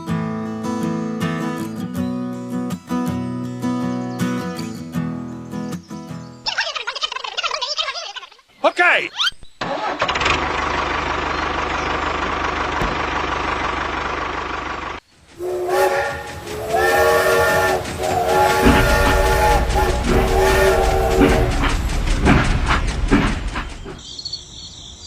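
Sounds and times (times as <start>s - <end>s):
multi-note horn blasts: 15.4s - 21.9s.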